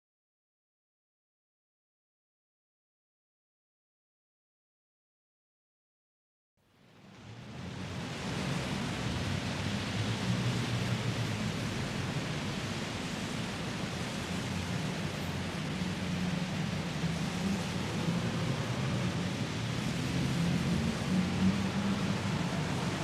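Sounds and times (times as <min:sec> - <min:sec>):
steady rushing noise: 0:07.1 - 0:23.0.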